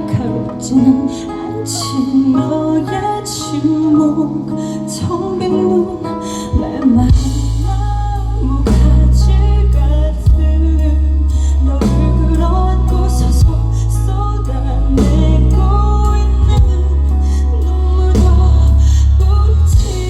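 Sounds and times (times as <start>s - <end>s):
woman singing: 0.0s - 20.0s
live band music: 5.2s - 20.0s
heavy bass: 7.0s - 20.0s.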